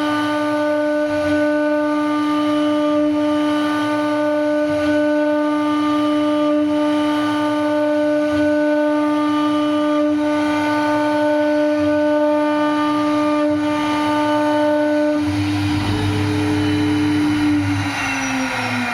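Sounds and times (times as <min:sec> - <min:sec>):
low rumble: 0:15.2 - 0:18.9
router spindle whining: 0:15.2 - 0:18.9.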